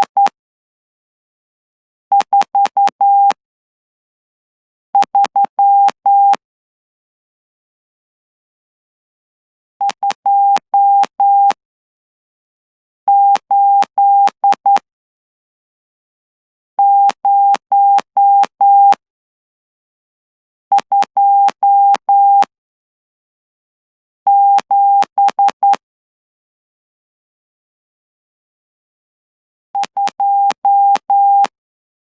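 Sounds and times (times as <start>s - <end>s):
morse code beeps: 5.0s - 6.4s, 9.8s - 11.6s, 13.1s - 14.8s, 16.8s - 19.0s, 20.8s - 22.5s, 24.3s - 25.8s, 29.8s - 31.5s.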